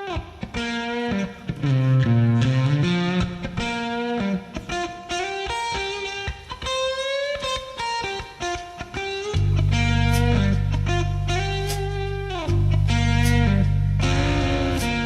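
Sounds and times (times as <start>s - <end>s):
blues electric guitar melody: 0.0s - 15.0s
sustained low bass note: 12.5s - 15.0s.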